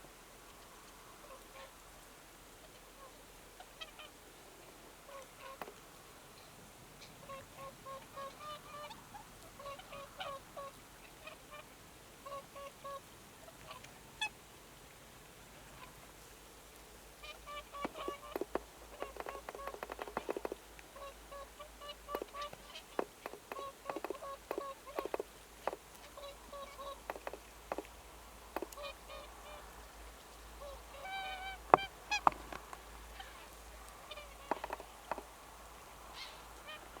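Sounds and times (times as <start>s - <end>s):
geese honking: 17.2s - 27.9s, 30.6s - 35.3s, 36.0s - 37.0s
sharp clicks: 17.8s - 20.6s, 22.1s - 25.8s, 27.0s - 27.9s.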